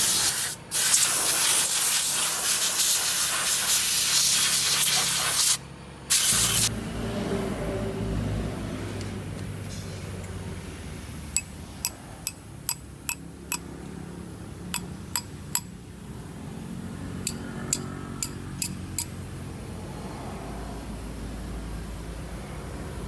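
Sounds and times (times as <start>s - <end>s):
low steady hum: 5.7s - 23.0s.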